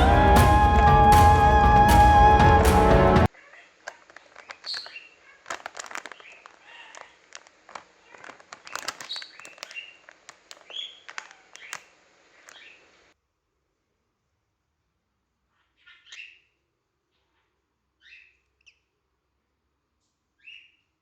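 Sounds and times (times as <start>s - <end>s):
sharp clicks and taps: 5.5s - 11.9s.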